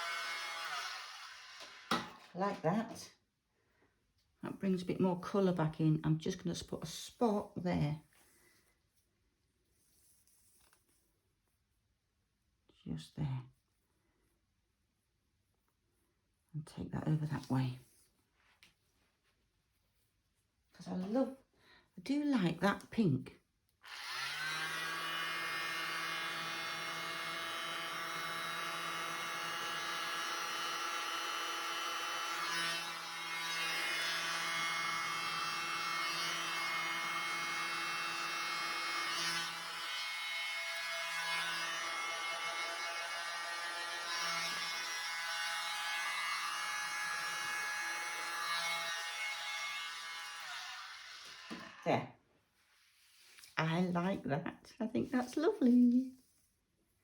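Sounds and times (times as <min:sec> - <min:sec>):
hairdryer running: 0:00.0 - 0:02.6, 0:23.9 - 0:39.8, 0:50.2 - 0:51.8.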